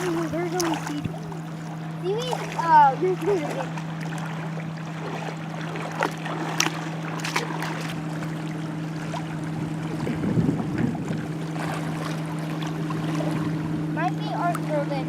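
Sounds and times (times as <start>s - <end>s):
steady low hum: 0.0s - 15.0s
water sloshing around wading feet: 0.0s - 15.0s
wind on microphone: 9.5s - 12.0s.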